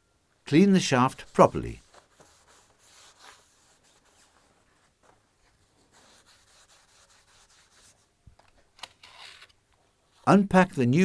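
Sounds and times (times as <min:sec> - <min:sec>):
cloth rubbing on metal shaft: 0:01.1 - 0:08.0.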